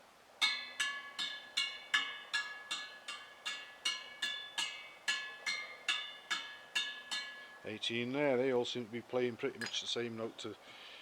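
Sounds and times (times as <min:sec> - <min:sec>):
spokes ringing pings: 0:00.4 - 0:07.7.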